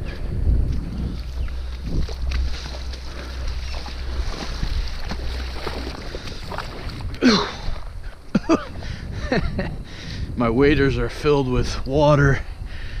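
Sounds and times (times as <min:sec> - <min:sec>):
water noise: 0:00.0 - 0:12.2
wind buffeting microphone: 0:00.0 - 0:13.0.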